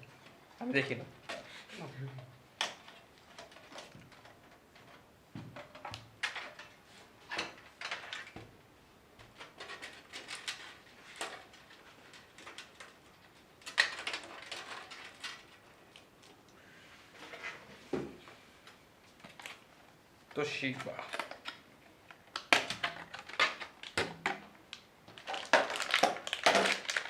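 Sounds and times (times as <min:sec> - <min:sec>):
plastic rustling: 0:09.3 - 0:16.5, 0:20.7 - 0:27.0.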